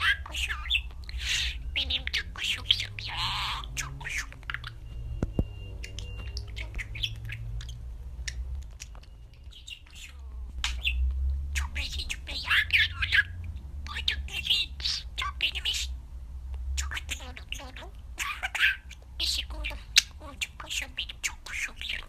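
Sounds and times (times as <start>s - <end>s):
budgerigar chirping: 0.0s - 16.0s, 16.8s - 22.0s.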